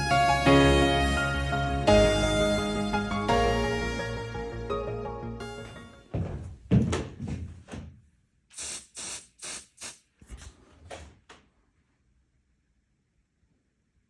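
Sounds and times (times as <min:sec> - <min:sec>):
dull handling thumps: 0:06.1 - 0:08.0.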